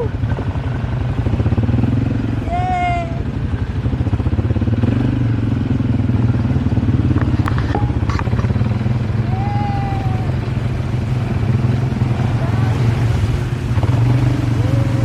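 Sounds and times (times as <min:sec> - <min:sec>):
small engine rattling: 0:03.0 - 0:15.0.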